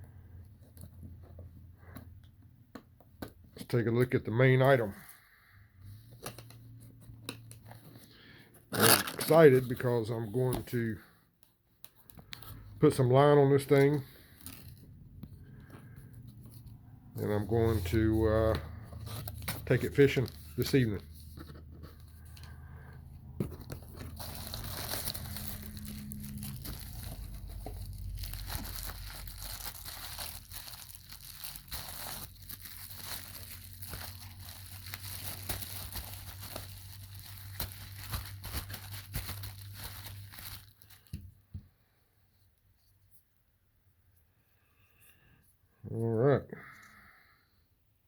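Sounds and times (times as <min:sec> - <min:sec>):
packaging tearing and rustling: 0:08.7 - 0:09.7, 0:17.3 - 0:41.2.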